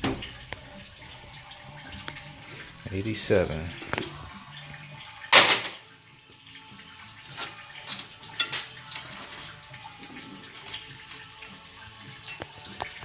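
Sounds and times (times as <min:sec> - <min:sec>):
metal parts clinking: 0:05.0 - 0:05.8, 0:07.4 - 0:13.0.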